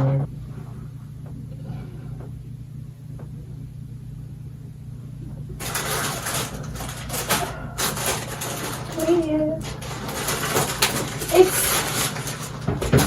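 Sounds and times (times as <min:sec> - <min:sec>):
steady low hum: 0:00.0 - 0:13.0
paper food wrappers crackling: 0:05.6 - 0:13.0.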